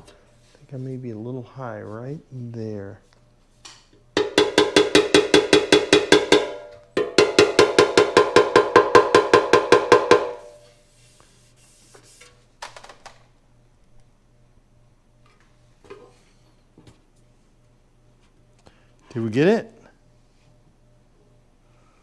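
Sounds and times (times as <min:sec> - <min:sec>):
rapid ringing taps on metal tank: 0:04.2 - 0:10.5.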